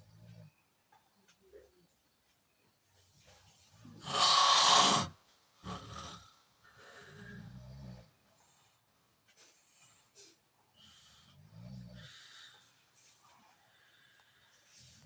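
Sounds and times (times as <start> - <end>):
pig squealing: 4.0 - 5.1.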